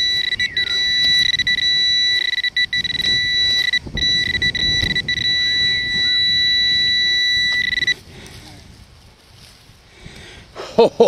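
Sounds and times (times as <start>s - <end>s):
metal detector high-pitched tone: 0.0s - 8.0s.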